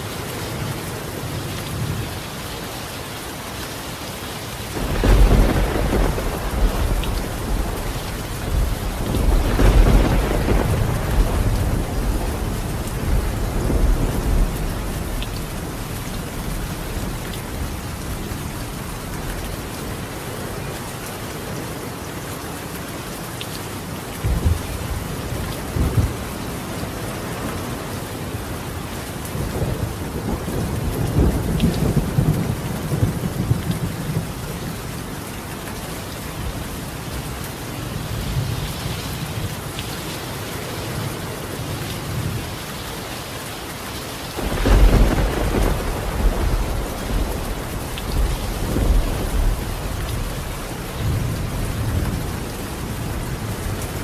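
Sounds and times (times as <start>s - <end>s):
heavy rain on a tiled roof: 0.0s - 54.0s
rolling thunder: 4.8s - 17.9s, 44.4s - 54.0s.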